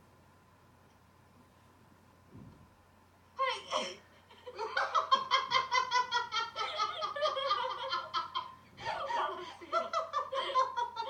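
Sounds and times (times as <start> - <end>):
hearty laughter: 4.3 - 11.0.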